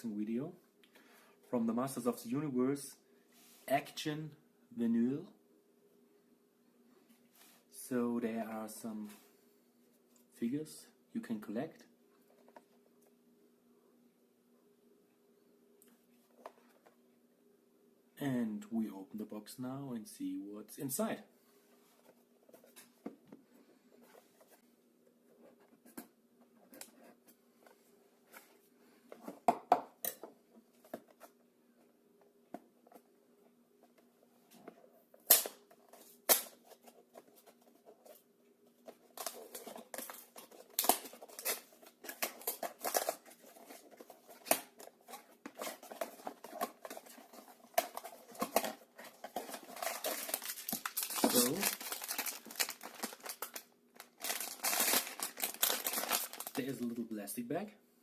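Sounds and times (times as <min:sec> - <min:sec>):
packaging rustling and crinkling: 0:35.3 - 0:57.0.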